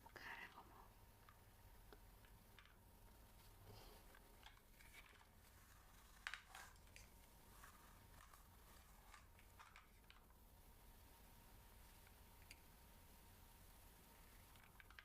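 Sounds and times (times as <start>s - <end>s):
soft clicks and scratches: 0.0s - 10.4s, 14.2s - 15.0s.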